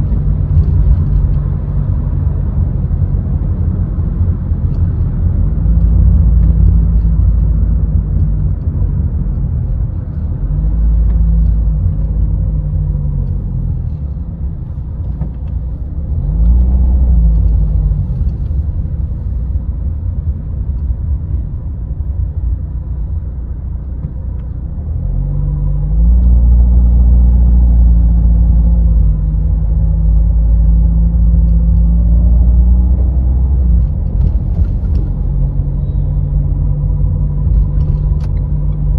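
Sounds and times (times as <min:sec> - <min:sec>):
road rumble: 0:00.0 - 0:38.9.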